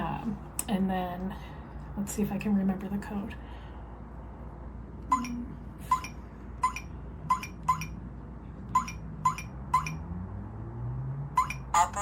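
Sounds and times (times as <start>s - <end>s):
keypad beeps: 5.1s - 8.0s, 8.7s - 10.0s, 11.4s - 11.7s.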